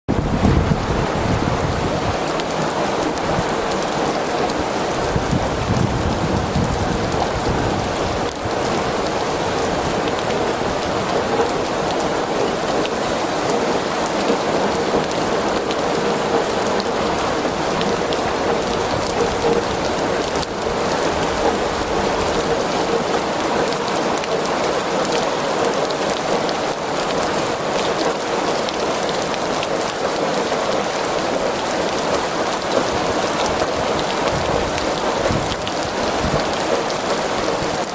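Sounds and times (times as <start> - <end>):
low rumble of thunder: 0.1 - 2.3, 5.0 - 11.0
steady rain falling: 0.1 - 37.9.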